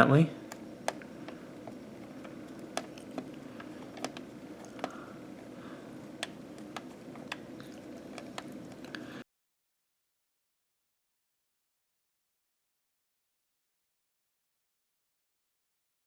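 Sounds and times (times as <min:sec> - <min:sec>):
faint room tone hum: 0:00.0 - 0:09.2
small clicks and taps of parts: 0:00.5 - 0:05.0, 0:06.2 - 0:07.4.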